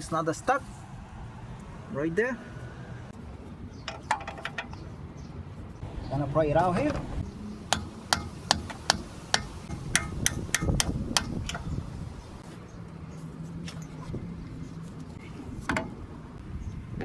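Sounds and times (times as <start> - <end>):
hammer striking metal chisel: 7.7 - 11.6.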